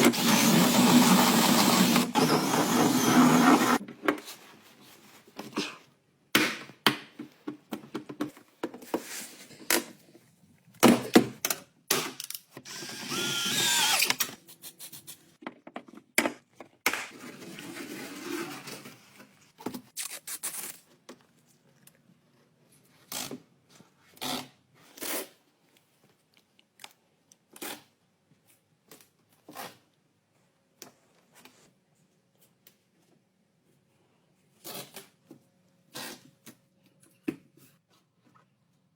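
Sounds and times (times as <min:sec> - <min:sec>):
power tool whirring: 0:00.0 - 0:03.8, 0:12.7 - 0:14.3.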